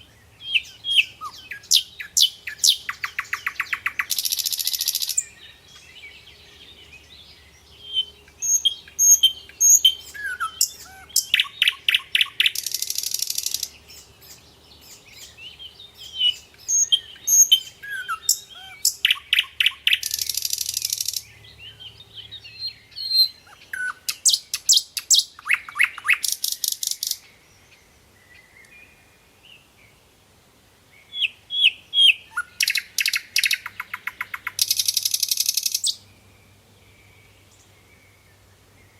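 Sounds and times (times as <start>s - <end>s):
birds chirping and whistling: 0.3s - 29.0s, 31.1s - 36.3s
rapid high bird chattering: 1.7s - 5.2s, 8.4s - 14.4s, 17.3s - 21.2s, 32.6s - 35.9s.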